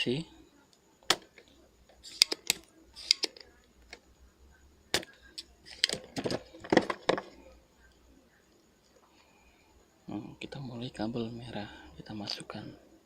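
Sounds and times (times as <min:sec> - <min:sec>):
desoldering pump: 0:01.1 - 0:04.0
soldering tools clicking and clinking: 0:01.1 - 0:04.0, 0:05.0 - 0:07.3.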